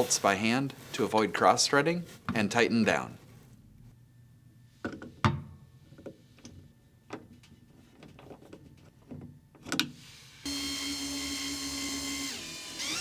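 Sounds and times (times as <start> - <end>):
power drill running: 10.0 - 13.0.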